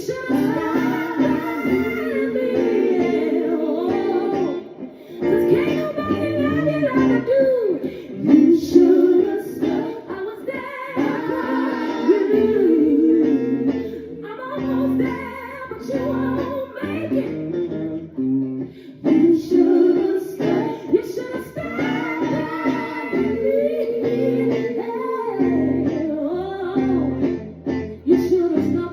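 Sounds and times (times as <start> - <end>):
person singing lead: 0.0 - 17.4, 19.0 - 27.3
live band playing: 3.9 - 7.5.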